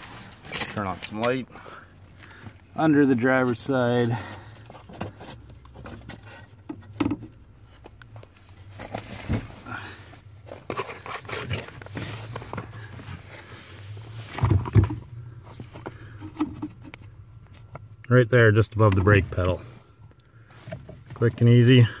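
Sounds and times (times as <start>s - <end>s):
scraping and rustling: 3.3s - 17.9s.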